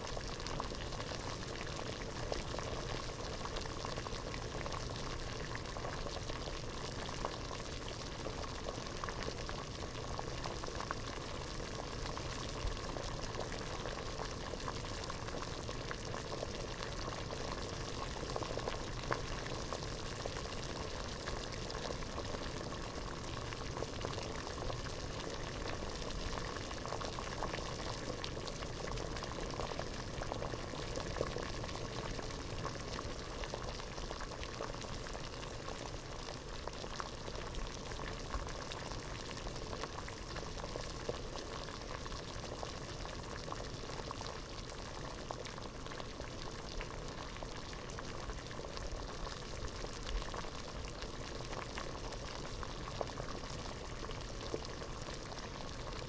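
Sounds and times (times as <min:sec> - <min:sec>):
water boiling in a pot: 0:00.0 - 0:56.0.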